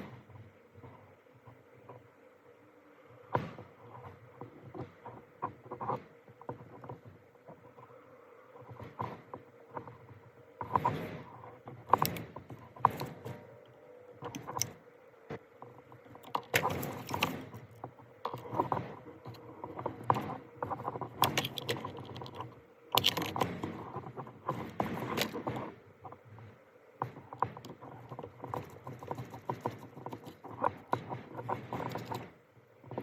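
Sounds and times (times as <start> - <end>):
faint steady hum: 0.0 - 33.0
small hard parts clattering: 15.6 - 33.0.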